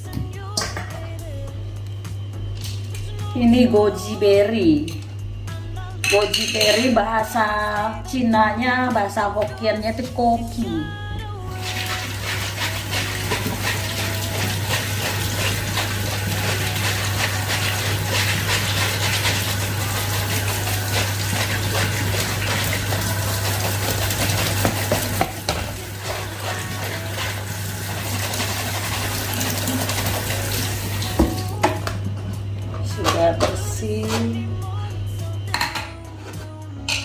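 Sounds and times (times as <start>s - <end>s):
tap water running: 11.5s - 32.0s.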